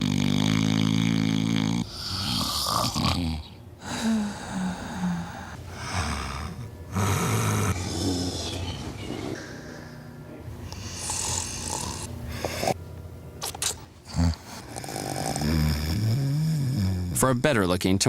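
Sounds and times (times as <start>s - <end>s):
person snoring: 0.0s - 8.8s, 10.6s - 12.8s, 14.0s - 17.2s.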